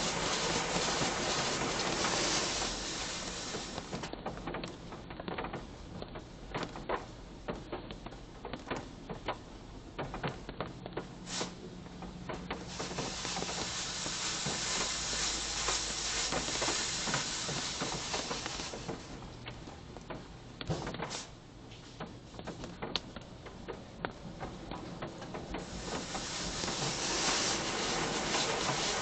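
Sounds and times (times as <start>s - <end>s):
high-pressure spray hissing: 0.0s - 4.1s, 11.2s - 11.6s, 12.6s - 19.1s, 25.5s - 29.0s
water pattering on car body: 0.0s - 9.4s, 12.3s - 20.2s, 22.6s - 29.0s.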